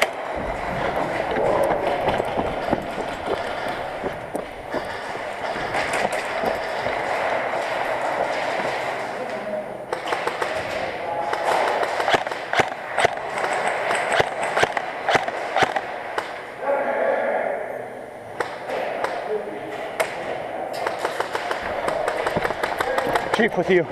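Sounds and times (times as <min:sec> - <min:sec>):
steady noisy background: 0:00.0 - 0:23.9
airsoft gunfire cracks: 0:09.9 - 0:16.4.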